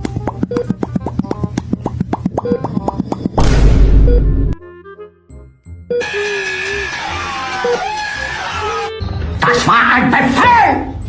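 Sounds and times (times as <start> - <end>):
deep boom sound effect: 3.4 - 4.6.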